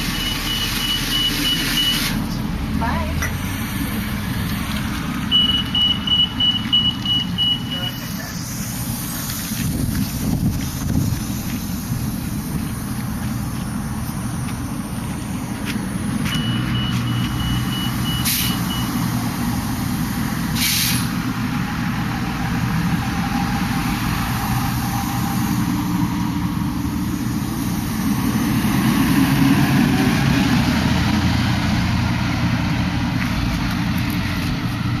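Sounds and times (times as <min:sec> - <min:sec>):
bus engine and road noise: 0:00.0 - 0:35.0
short high beeps: 0:05.3 - 0:08.0, 0:16.3 - 0:18.9
air brake hisses: 0:18.0 - 0:19.0, 0:20.5 - 0:21.2.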